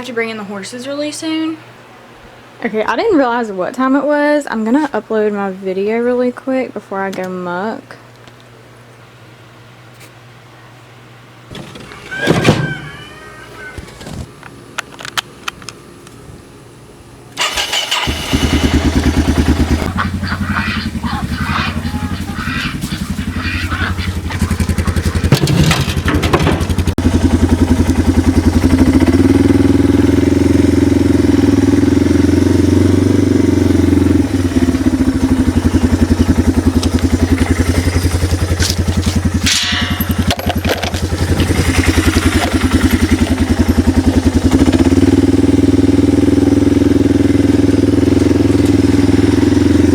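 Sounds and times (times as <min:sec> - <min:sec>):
small engine starting and running: 0:17.4 - 0:49.9.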